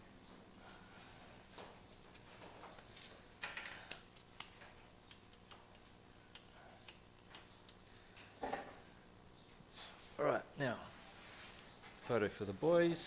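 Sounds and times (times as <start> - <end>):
light irregular clicks: 3.4 - 8.4.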